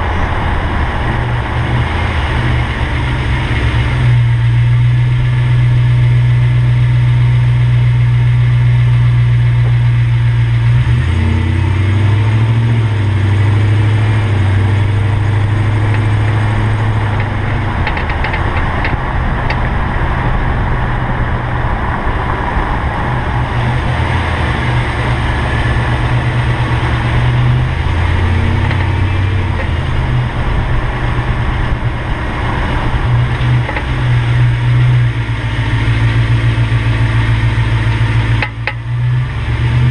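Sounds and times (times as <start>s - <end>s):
pickup engine and road hum: 0.0s - 39.9s
sharp clicks from front suspension: 15.8s - 19.8s, 38.4s - 38.9s.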